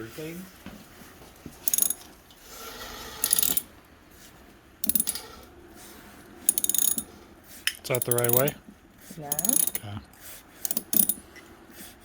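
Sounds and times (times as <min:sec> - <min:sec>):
ratchet wrench clicking: 0:01.7 - 0:02.0, 0:03.2 - 0:03.7, 0:04.8 - 0:05.2, 0:06.5 - 0:07.1, 0:07.7 - 0:08.6, 0:09.3 - 0:09.8, 0:10.6 - 0:11.2.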